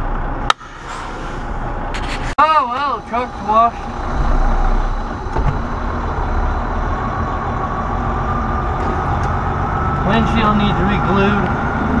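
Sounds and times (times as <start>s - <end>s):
diesel truck engine droning: 0.0s - 12.0s
faint whine: 0.4s - 6.6s.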